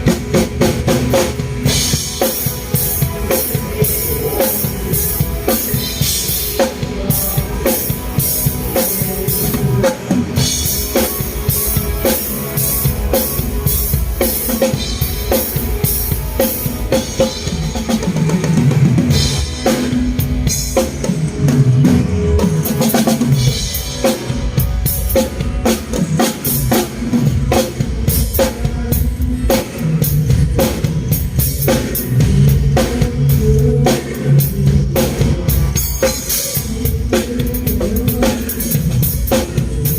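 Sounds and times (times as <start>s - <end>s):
drum kit groove: 0.0s - 39.9s.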